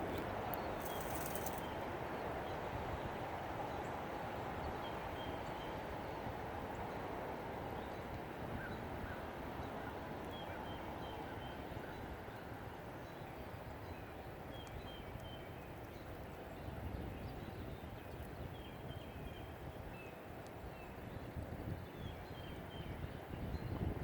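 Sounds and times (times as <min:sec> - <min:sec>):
small birds chirping: 0:00.0 - 0:02.3, 0:09.6 - 0:23.8.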